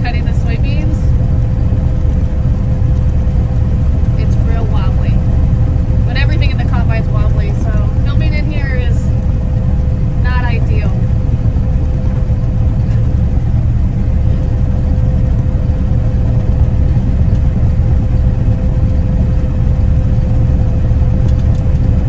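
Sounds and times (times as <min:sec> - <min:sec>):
combine harvester engine rumble: 0:00.0 - 0:22.0
constant whine: 0:00.0 - 0:22.0.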